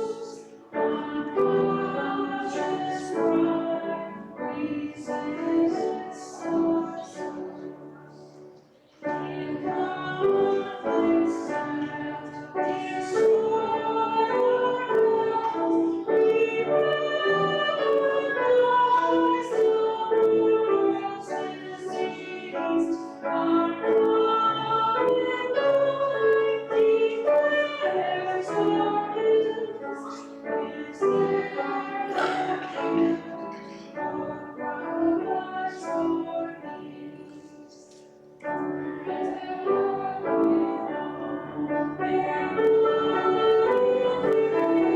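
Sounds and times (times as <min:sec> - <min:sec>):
church singing with instruments: 0:00.0 - 0:44.9.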